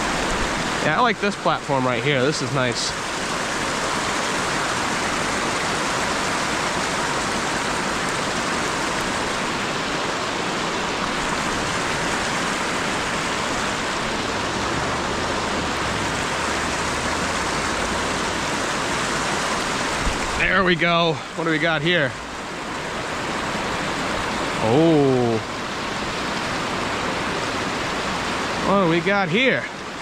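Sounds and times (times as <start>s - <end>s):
creek water rushing: 0.0s - 30.0s.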